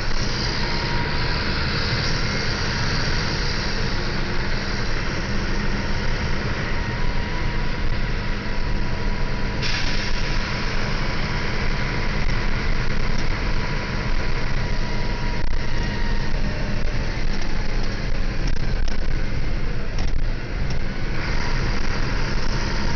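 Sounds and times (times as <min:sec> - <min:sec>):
bus engine droning: 0:00.0 - 0:22.9
bright hiss: 0:09.6 - 0:12.3.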